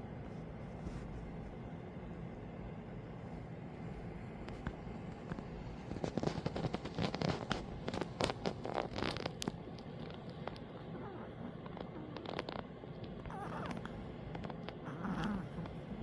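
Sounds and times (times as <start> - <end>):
rustling and crackling clicks: 3.8 - 16.0.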